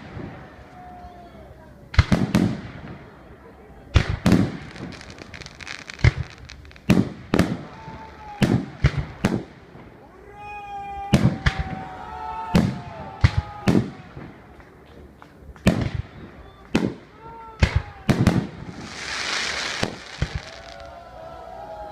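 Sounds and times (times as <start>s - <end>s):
fireworks crackling: 1.8s - 10.1s, 12.6s - 21.2s
fireworks booming: 1.9s - 10.0s, 15.6s - 21.0s.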